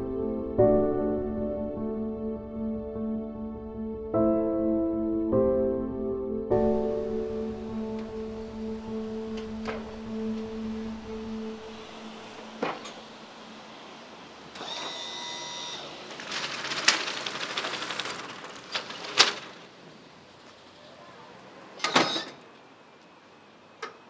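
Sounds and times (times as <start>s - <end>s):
rattling: 15.8s - 20.1s.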